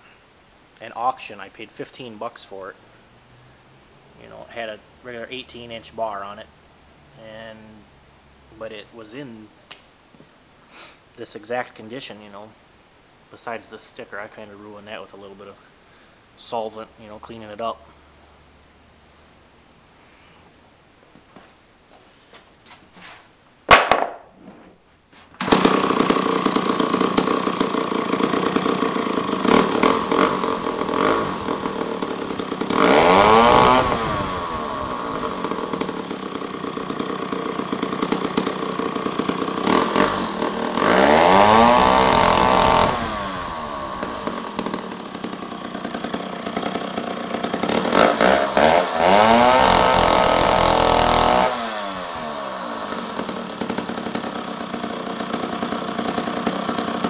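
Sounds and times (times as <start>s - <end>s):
chainsaw engine starting and revving: 25.4s - 57.0s.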